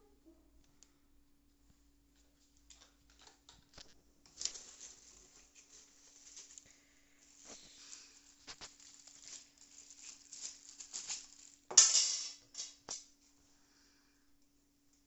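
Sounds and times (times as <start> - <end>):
faint electrical hum: 0.0 - 15.0
packaging rustling: 3.1 - 11.7.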